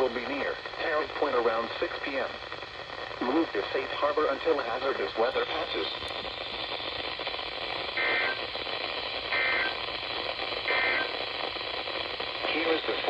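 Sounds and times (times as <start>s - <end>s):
radio hiss: 0.0s - 13.0s
digital data bursts: 8.0s - 8.5s, 9.2s - 9.8s, 10.7s - 11.2s.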